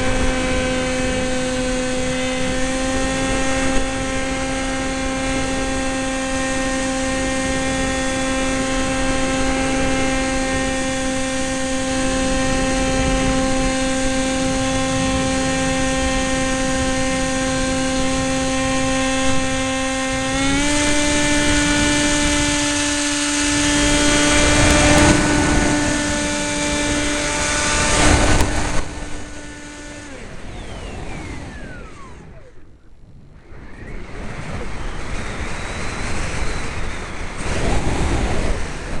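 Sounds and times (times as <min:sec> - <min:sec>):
electric motor and propeller whine: 0:00.0 - 0:39.0
wind noise: 0:00.0 - 0:39.0.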